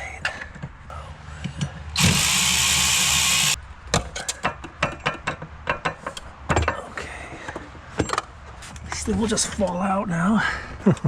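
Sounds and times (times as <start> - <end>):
power tool running: 2.0 - 3.6.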